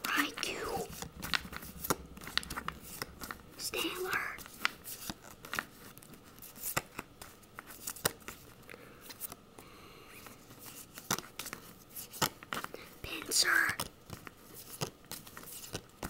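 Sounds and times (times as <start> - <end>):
cards clicking and snapping: 10.9 - 12.7.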